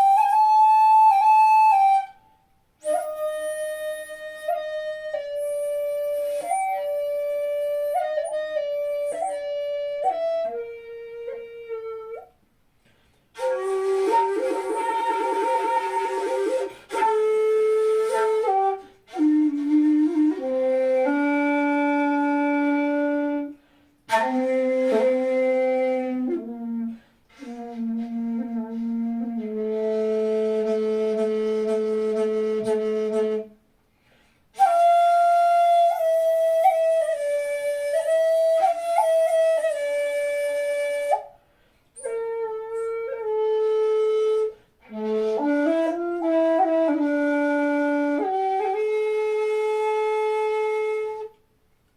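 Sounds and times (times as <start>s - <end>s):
bamboo flute long notes: 0.0s - 12.4s, 13.4s - 33.6s, 34.6s - 41.4s, 42.0s - 51.4s
breath noise: 33.9s - 34.5s.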